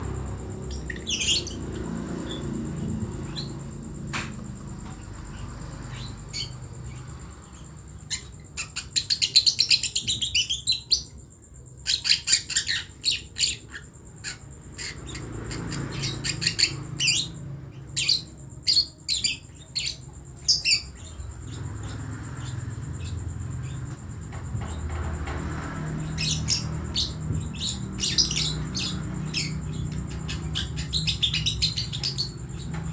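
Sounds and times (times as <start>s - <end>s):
bird chick chirping: 26.1s - 32.9s.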